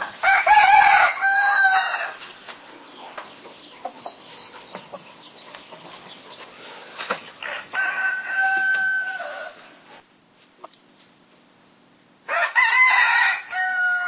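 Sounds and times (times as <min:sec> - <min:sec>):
rooster crowing: 0:00.0 - 0:02.2, 0:07.4 - 0:09.7, 0:12.3 - 0:14.0
farmyard background: 0:00.0 - 0:14.0.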